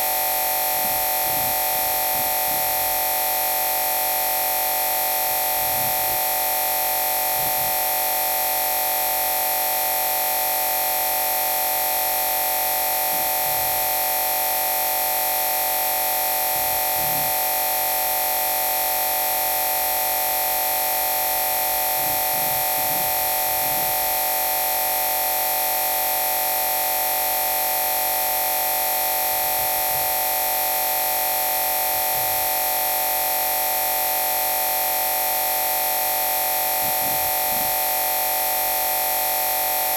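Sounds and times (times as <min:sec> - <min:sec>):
loud electronic static with tones: 0:20.0 - 0:25.2.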